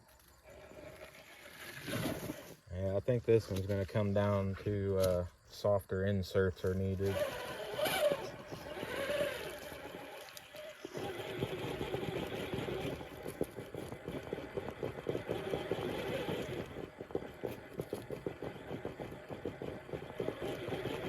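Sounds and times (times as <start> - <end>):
electric motor whining: 6.7 - 21.0
rapid irregular clicking: 7.0 - 21.0.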